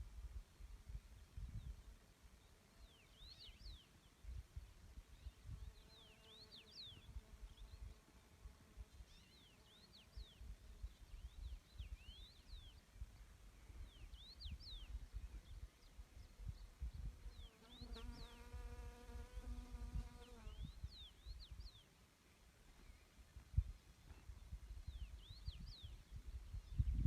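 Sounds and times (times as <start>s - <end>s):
wind rumble on microphone: 0.0s - 2.0s, 3.6s - 5.8s, 10.2s - 21.7s, 23.3s - 27.0s
songbird chirping: 0.0s - 27.0s
insect buzzing: 17.6s - 20.8s.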